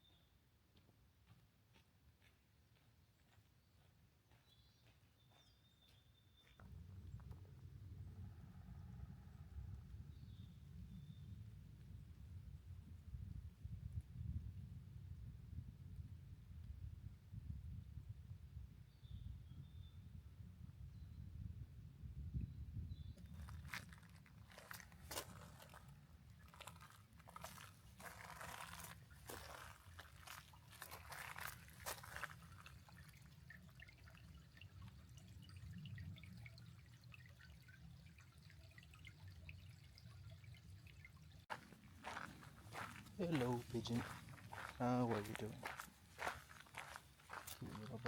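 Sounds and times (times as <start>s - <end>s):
faint low rumble: 6.6s - 18.5s
faint dripping ticks: 28.8s - 43.0s.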